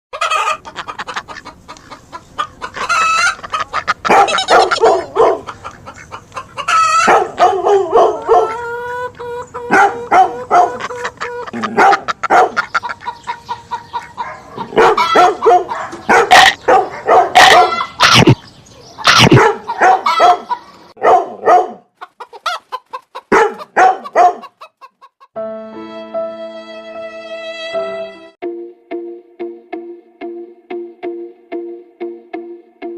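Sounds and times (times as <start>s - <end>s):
chickens clucking: 0.2s - 21.0s, 22.0s - 25.4s
dog barking: 4.0s - 5.6s, 6.9s - 8.6s, 9.7s - 10.9s, 11.6s - 12.7s, 14.2s - 18.4s, 19.0s - 21.9s, 23.3s - 24.5s.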